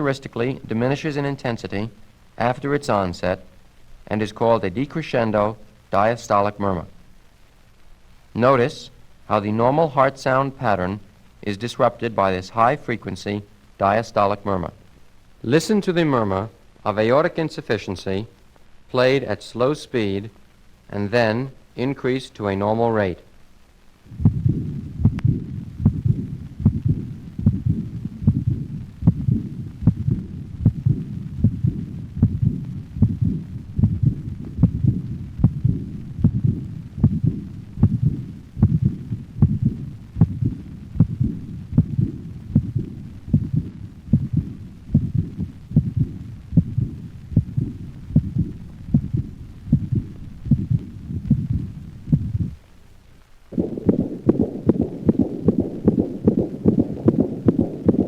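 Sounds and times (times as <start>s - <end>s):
heart murmur: 24.1s - 52.6s, 53.5s - 58.0s
dog heartbeat: 24.2s - 52.6s, 53.6s - 58.0s.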